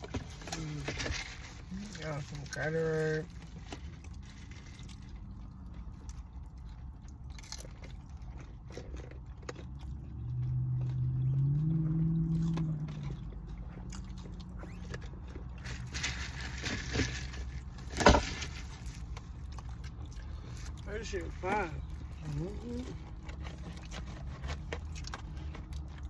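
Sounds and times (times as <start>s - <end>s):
food chewing and crunching: 0.0s - 26.0s.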